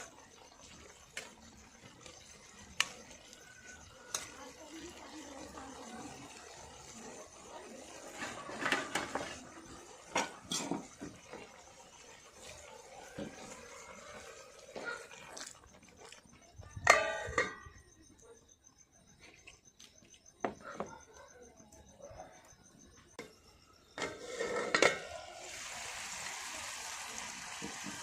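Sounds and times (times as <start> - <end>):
metal utensils clinking on pot: 0.0 - 7.2, 7.9 - 12.5, 16.8 - 17.9, 24.0 - 25.2
insects chirping: 0.0 - 28.0.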